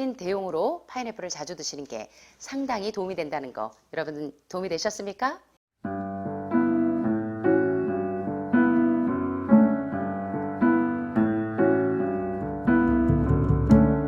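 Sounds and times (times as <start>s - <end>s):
piano music: 5.8s - 14.0s.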